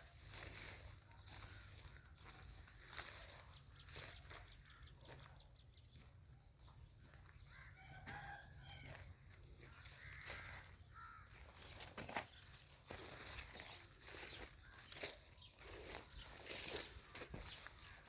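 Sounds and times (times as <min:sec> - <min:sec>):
rooster crowing: 0:07.5 - 0:09.2.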